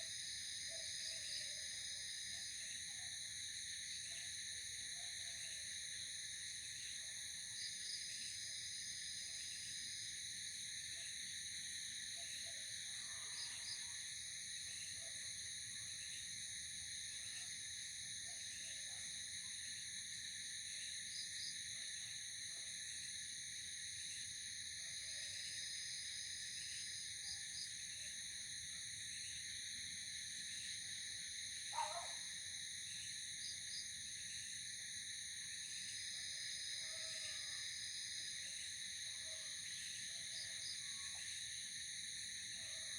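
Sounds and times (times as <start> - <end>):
insect chorus trilling: 25.3 - 42.5
louder insect call: 30.2 - 42.4.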